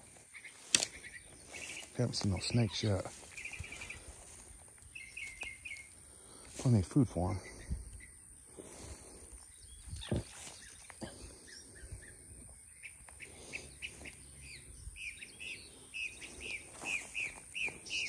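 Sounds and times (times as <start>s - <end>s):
brush rustling and cracking: 0.0s - 6.8s, 9.9s - 11.1s, 16.2s - 18.0s
bird chirping: 0.0s - 18.0s.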